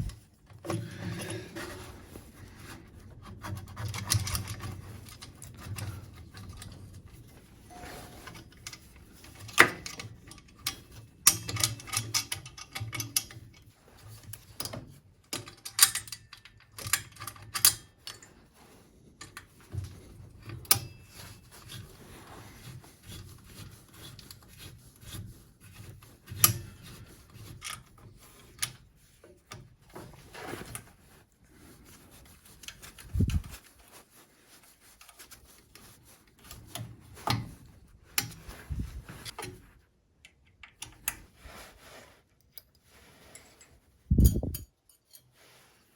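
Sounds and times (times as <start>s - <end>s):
metal pipes clinking: 7.6s - 13.6s.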